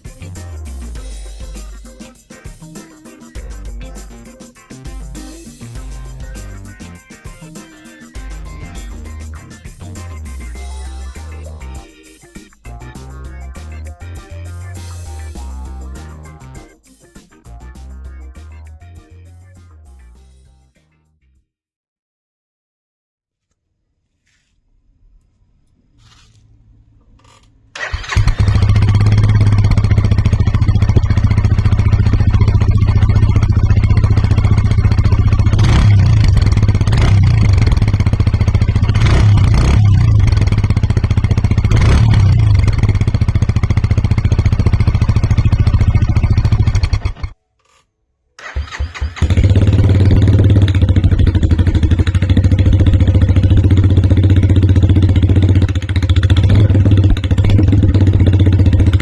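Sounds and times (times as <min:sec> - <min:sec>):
motorcycle engine idling: 0:27.8 - 0:47.4, 0:48.4 - 0:59.0.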